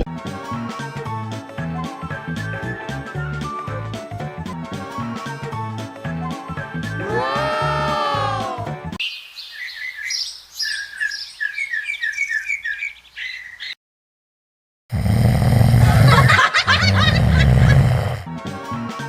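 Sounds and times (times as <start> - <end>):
music: 0.0 - 9.0, 18.2 - 19.0
bird chirping and squawking: 9.0 - 13.8.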